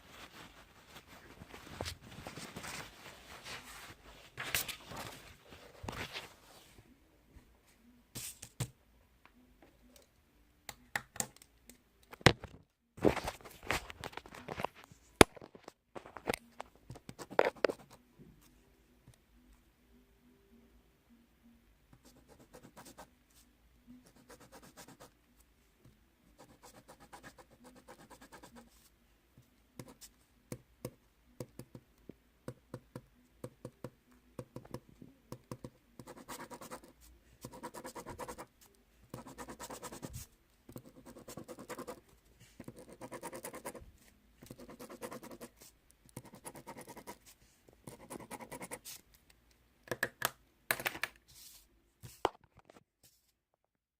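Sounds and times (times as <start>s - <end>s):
pen scratching on paper: 24.0s - 25.1s, 26.4s - 28.7s, 35.5s - 38.5s, 39.1s - 42.0s, 42.6s - 43.8s, 44.4s - 49.0s.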